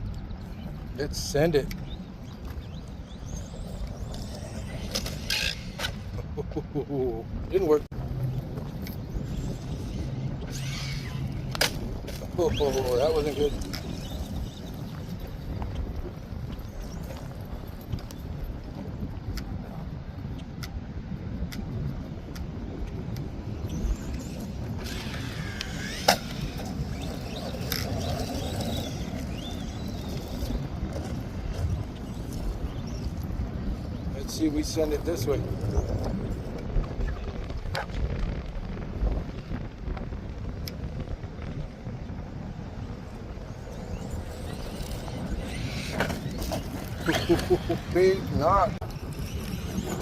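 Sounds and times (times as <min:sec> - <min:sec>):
wind on microphone: 0:00.0 - 0:50.0
rc car electric motor whining: 0:02.5 - 0:06.2, 0:08.6 - 0:15.7, 0:23.6 - 0:33.3, 0:43.0 - 0:50.0.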